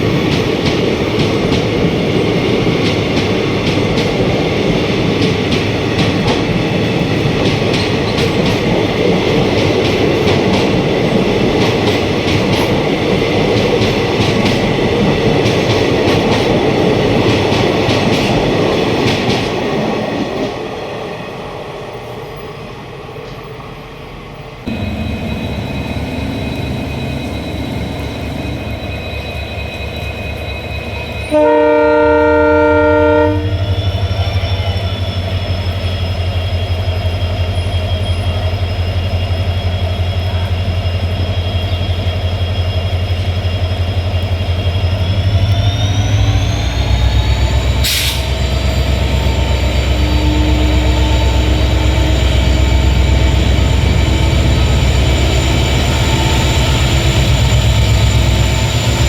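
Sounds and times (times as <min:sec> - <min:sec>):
diesel locomotive engine humming: 0:22.0 - 0:59.0
locomotive multi-note horn: 0:31.2 - 0:35.0, 0:49.4 - 0:54.9.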